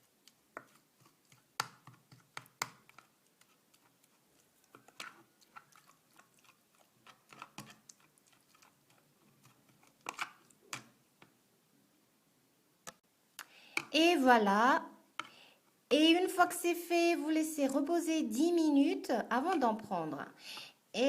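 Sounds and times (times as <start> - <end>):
utensil stirring sticky mixture: 0.0 - 11.4, 19.0 - 20.2.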